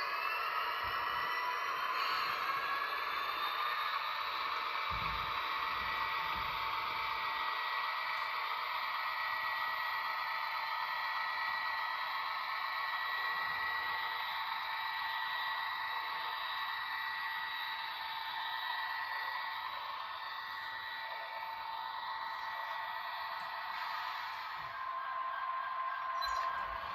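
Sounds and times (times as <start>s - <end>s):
model train whirring on track: 0.0s - 26.9s.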